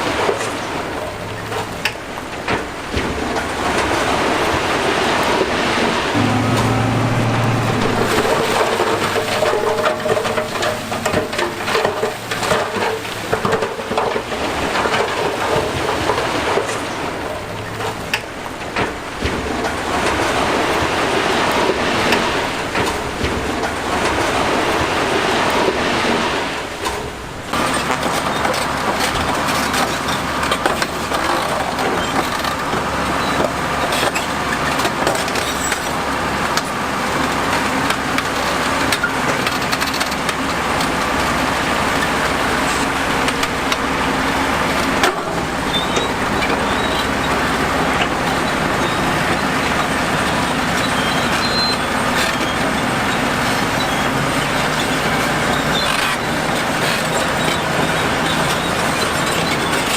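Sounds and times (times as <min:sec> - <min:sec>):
construction machine engine running: 0:06.1 - 0:14.2.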